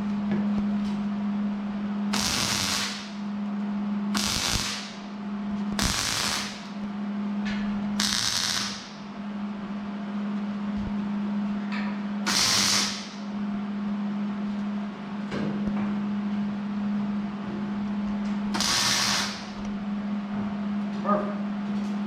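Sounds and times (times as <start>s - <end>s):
steady low hum: 0.0s - 22.0s
arc welder hissing: 2.1s - 3.2s, 4.2s - 5.1s, 5.8s - 6.8s, 8.0s - 9.1s, 12.2s - 13.3s, 18.5s - 19.7s.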